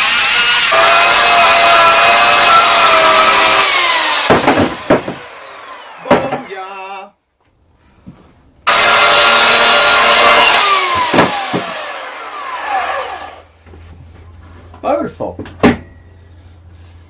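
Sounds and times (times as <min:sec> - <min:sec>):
chainsaw cutting wood: 0:00.0 - 0:06.4, 0:08.7 - 0:13.5.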